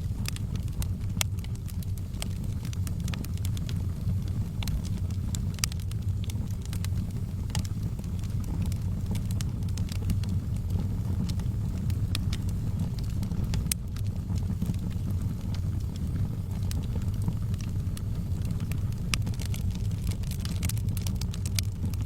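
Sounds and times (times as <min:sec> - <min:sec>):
fire crackles and pops: 0:00.0 - 0:22.0
low rumble of flames: 0:00.0 - 0:22.0.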